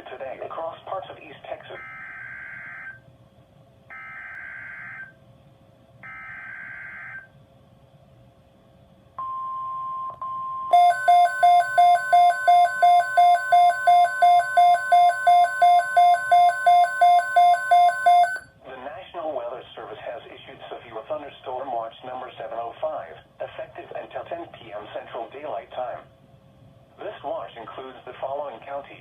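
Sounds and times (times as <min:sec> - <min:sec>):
loud beeping alarm: 0:10.7 - 0:18.4
steady alert tone: 0:10.7 - 0:18.4
buzzing data tone bursts: 0:10.8 - 0:18.4.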